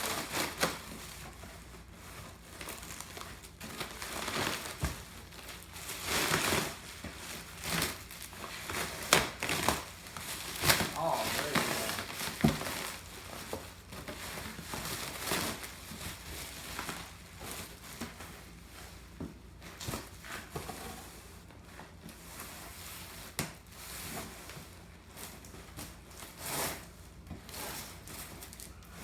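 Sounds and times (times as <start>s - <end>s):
cardboard crinkling and tearing: 0.0s - 18.2s.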